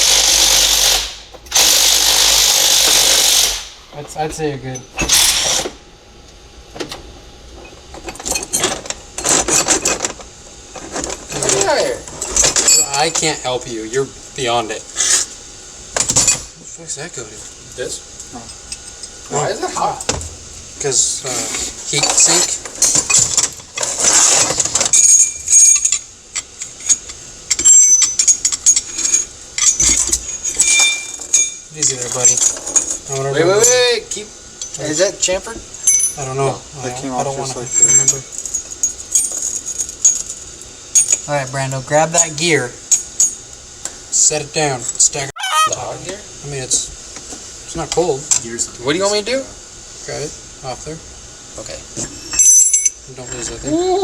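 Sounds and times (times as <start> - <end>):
short loud hiss: 0.0 - 4.0
metal gears clinking: 11.3 - 13.3, 21.9 - 26.1, 26.7 - 33.8, 35.8 - 36.2.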